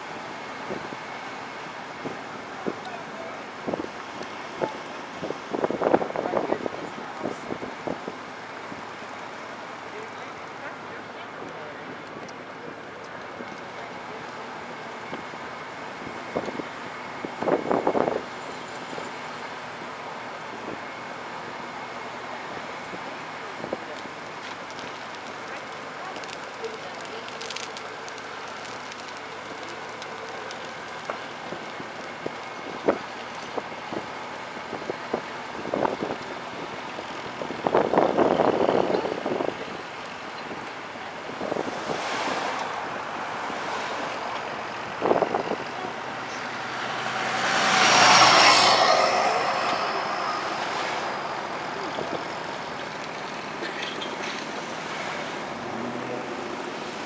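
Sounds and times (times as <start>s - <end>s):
steady outdoor noise: 0.0s - 57.0s
loud passing swell: 46.5s - 52.8s.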